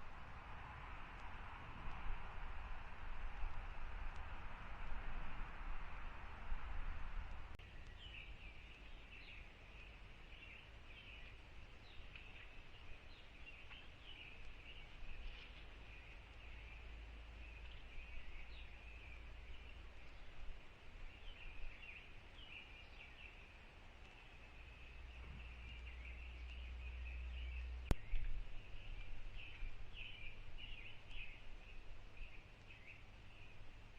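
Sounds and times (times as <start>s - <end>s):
low steady rumble: 0.0s - 33.9s
birds chirping: 7.6s - 33.9s.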